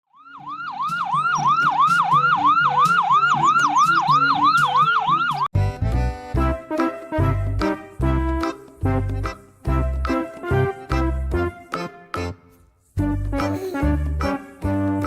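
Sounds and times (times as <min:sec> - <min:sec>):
fast yelp siren: 0:00.2 - 0:05.5
upbeat bouncy music: 0:00.8 - 0:15.0.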